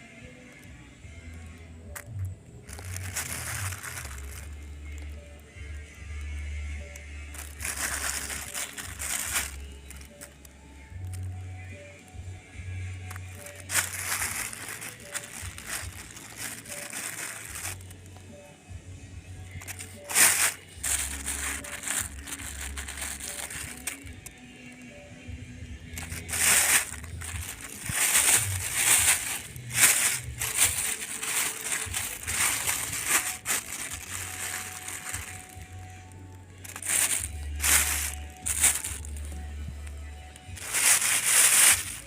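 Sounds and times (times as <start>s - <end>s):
background music: 0.0s - 42.0s
crackling rustling noise: 1.4s - 12.2s, 12.9s - 18.3s, 19.4s - 25.0s, 25.8s - 42.0s.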